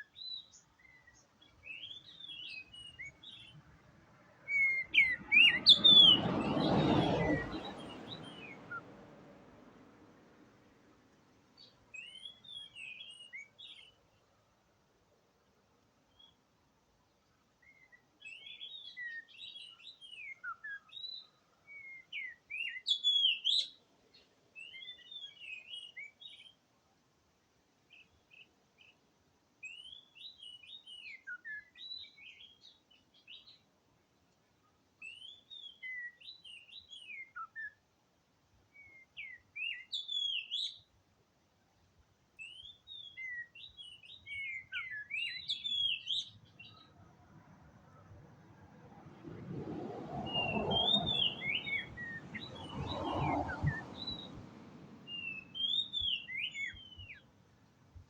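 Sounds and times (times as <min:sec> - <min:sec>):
bird singing whistled phrases: 0:17.6 - 0:23.7, 0:35.0 - 0:37.8, 0:38.7 - 0:40.8, 0:42.4 - 0:46.9, 0:50.2 - 0:54.4, 0:55.1 - 0:57.2.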